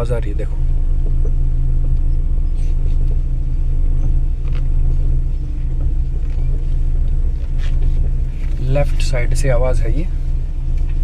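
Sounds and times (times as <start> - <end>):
car engine idling: 0.0 - 11.0
faint suspension knocks: 1.0 - 1.5.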